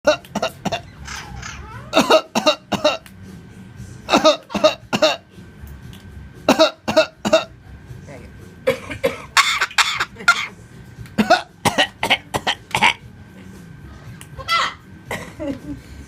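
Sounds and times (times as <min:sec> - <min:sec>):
cockatoo mimicking a cough: 0:00.1 - 0:00.9, 0:01.9 - 0:03.0, 0:04.1 - 0:05.3, 0:06.5 - 0:07.6, 0:08.7 - 0:10.6, 0:11.2 - 0:13.0.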